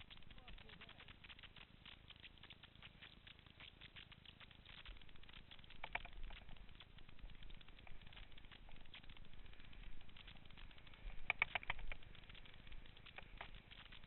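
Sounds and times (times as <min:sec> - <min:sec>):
bike tyres rolling on gravel: 0:00.0 - 0:14.0
sharp click: 0:05.6 - 0:06.6, 0:11.2 - 0:12.0.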